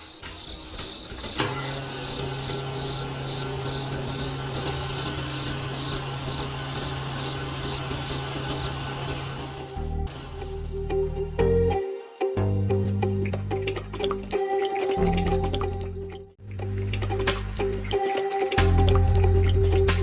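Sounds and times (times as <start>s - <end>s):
small electric motor whirring: 1.9s - 9.8s.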